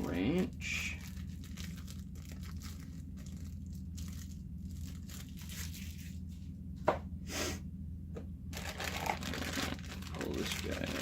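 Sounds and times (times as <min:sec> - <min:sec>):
plastic packaging rustling: 0:00.8 - 0:06.3, 0:08.5 - 0:11.0.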